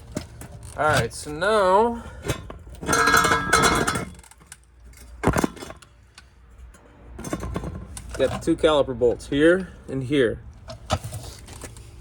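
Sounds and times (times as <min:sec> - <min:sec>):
metal clattering and clinking: 0:02.2 - 0:08.5.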